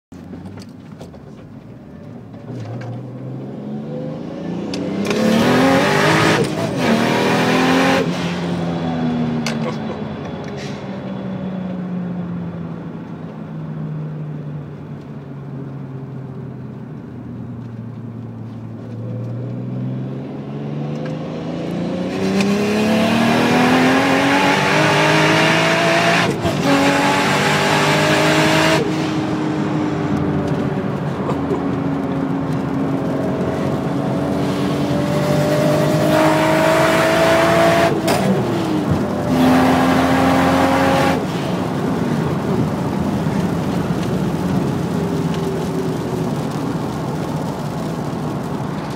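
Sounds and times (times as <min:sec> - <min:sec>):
turbo car engine revving: 0:03.0 - 0:08.3, 0:19.1 - 0:48.9.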